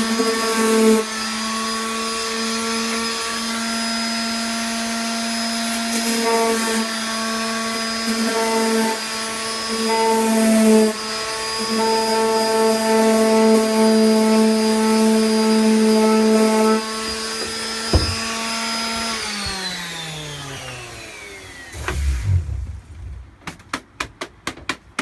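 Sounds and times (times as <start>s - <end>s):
electric power tool humming: 8.1s - 23.3s.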